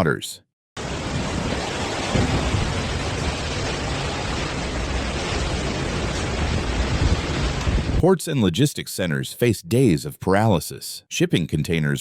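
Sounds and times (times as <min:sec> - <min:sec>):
heavy rain: 0:00.8 - 0:08.0
wind: 0:00.8 - 0:10.0.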